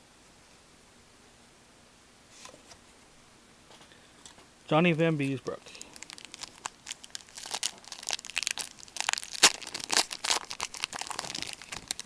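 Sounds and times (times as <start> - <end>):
foil wrapper crinkling and tearing: 5.7 - 12.0.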